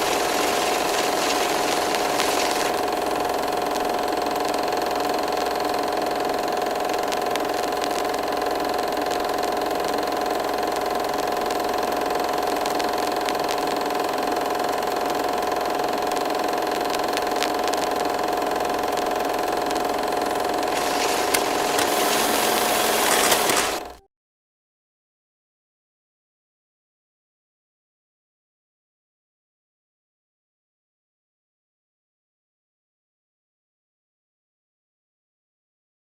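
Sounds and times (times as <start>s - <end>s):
film projector whirring: 0.0s - 24.0s.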